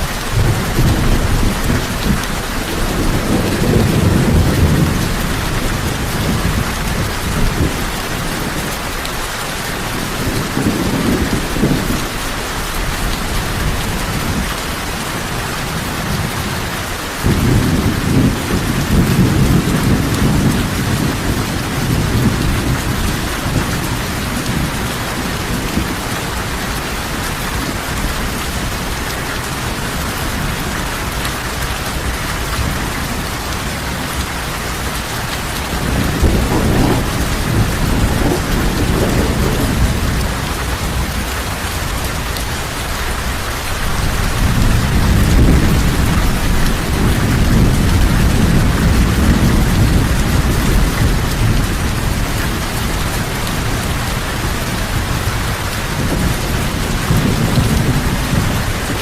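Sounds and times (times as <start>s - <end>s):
heavy rain falling: 0.0s - 59.0s
rolls of thunder: 35.7s - 41.2s.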